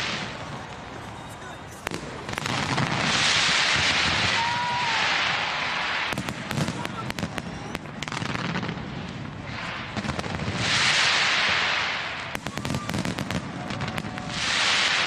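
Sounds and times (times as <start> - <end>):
loud crackling hiss: 0.0 - 1.0, 1.8 - 15.0
fireworks popping and crackling: 0.0 - 15.0.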